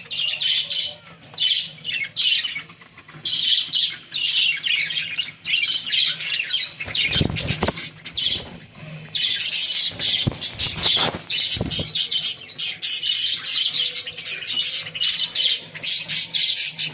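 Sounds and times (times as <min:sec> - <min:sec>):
lovebirds squawky chirping: 0:00.0 - 0:16.9.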